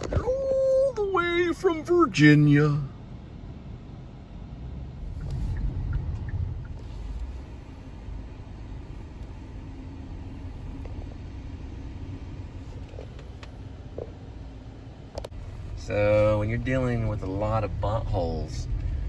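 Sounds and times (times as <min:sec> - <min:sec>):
car engine rumble: 0:00.0 - 0:19.0.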